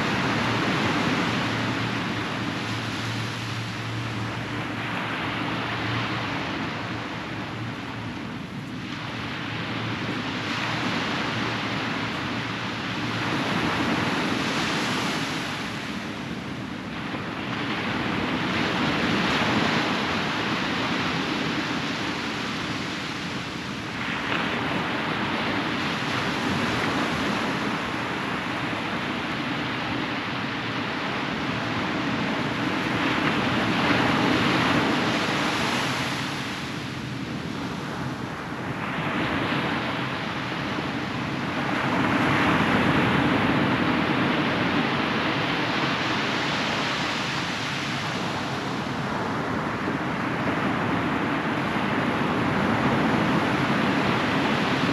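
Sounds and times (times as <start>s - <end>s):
ocean surf breaking on beach: 0.0s - 54.9s
steady low hum: 0.0s - 54.9s.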